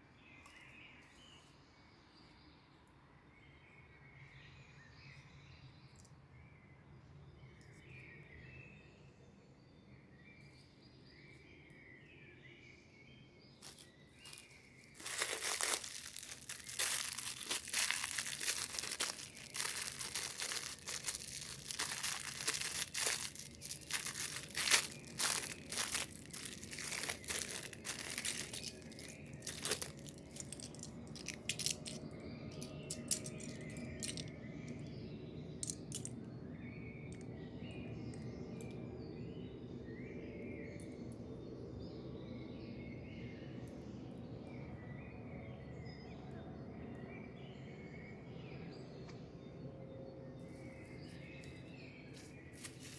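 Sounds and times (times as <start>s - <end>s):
faint bird chirping: 0.0s - 52.9s
packaging tearing and crinkling: 13.6s - 34.2s, 52.6s - 52.9s.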